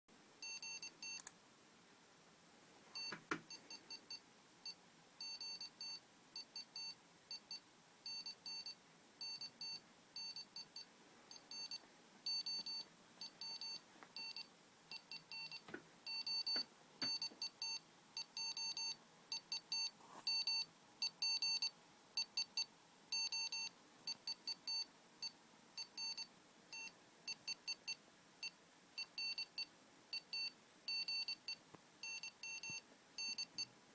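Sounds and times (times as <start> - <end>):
morse code beeps: 11.5 - 21.7.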